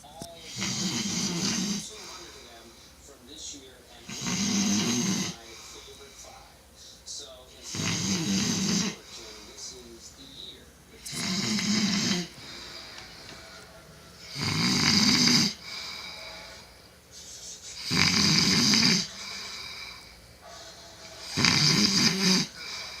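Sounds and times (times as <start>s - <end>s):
person snoring loudly: 0.4s - 2.1s, 4.0s - 5.6s, 7.6s - 9.3s, 11.0s - 13.5s, 14.2s - 16.6s, 17.8s - 20.1s, 21.2s - 23.0s.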